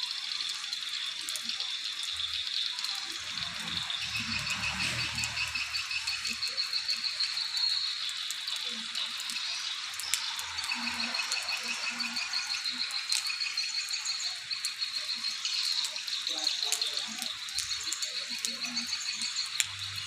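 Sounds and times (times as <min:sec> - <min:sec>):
swiftlets chirping and twittering: 0:00.0 - 0:20.0.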